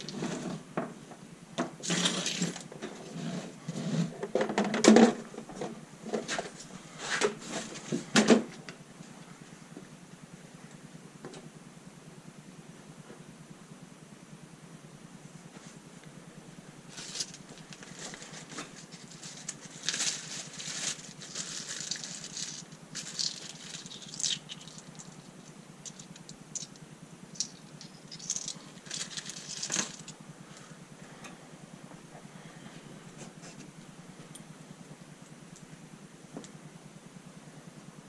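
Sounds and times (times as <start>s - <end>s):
hands rustling small parts: 16.9s - 30.2s.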